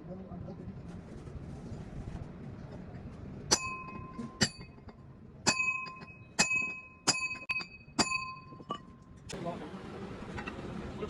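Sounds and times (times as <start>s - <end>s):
hammer striking steel: 3.5s - 9.0s.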